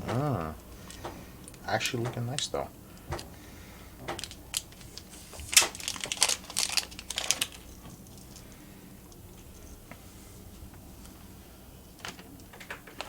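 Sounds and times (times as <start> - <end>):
light clicks and packaging rustles: 4.0 - 10.0, 12.0 - 13.0.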